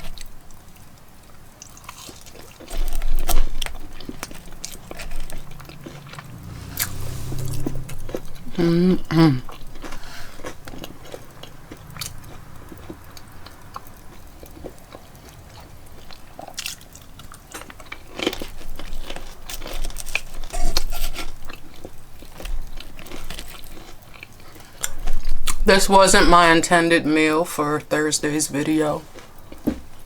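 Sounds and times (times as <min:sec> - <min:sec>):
crunchy biting and chewing: 0:01.3 - 0:25.6.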